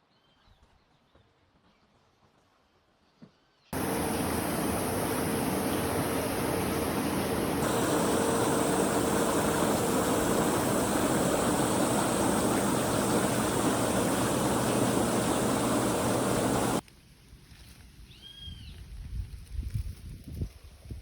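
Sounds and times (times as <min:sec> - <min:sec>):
rushing running water: 0:03.8 - 0:16.8.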